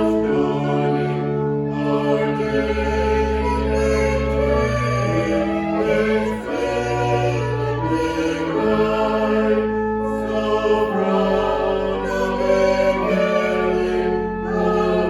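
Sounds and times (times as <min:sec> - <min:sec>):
slow choral music: 0:00.0 - 0:15.0.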